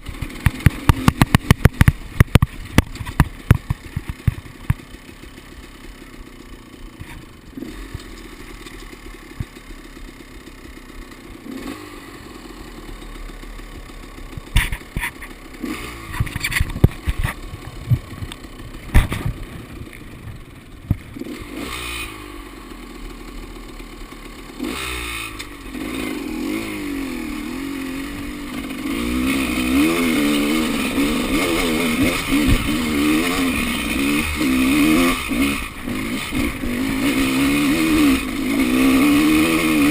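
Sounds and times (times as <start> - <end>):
motorcycle engine revving: 0.0 - 39.9
sharp knocks and clatter: 0.1 - 4.9, 14.3 - 15.4, 16.0 - 21.1.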